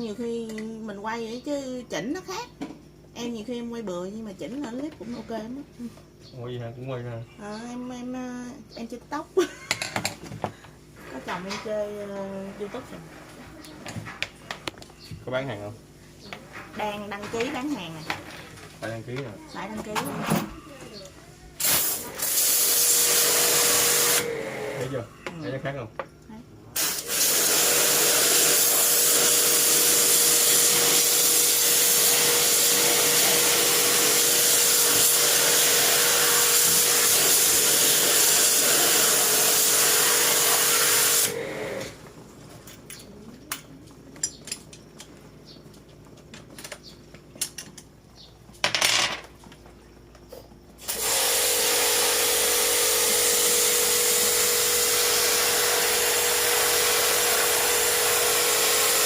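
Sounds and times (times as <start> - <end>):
pressure washer spraying water: 21.6 - 24.8, 26.8 - 42.0, 50.8 - 59.0.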